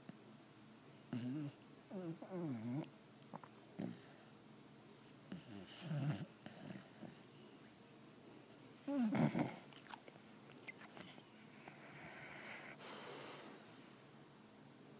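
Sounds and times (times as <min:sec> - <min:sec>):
dog snoring: 0:01.1 - 0:04.3, 0:05.0 - 0:07.2, 0:08.9 - 0:10.0, 0:10.8 - 0:13.7
dog breathing: 0:10.7 - 0:13.9.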